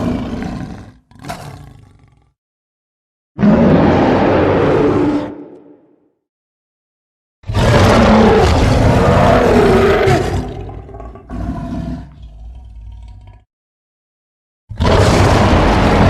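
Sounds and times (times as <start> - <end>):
cartoon monster roar: 3.4 - 5.7, 7.5 - 12.0, 14.8 - 16.0.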